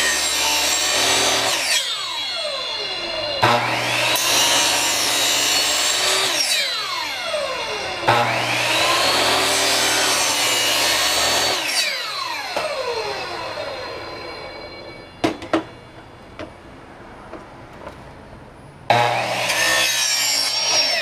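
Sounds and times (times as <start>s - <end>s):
power saw cutting plastic pipe: 0.0s - 15.8s, 18.9s - 21.0s.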